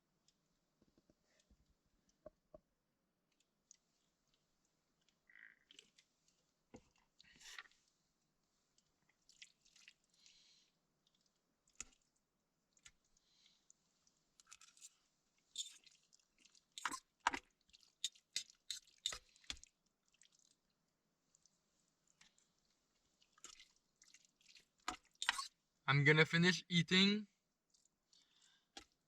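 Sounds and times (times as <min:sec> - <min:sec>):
person chewing pasta: 0:08.7 - 0:25.6, 0:27.6 - 0:29.0.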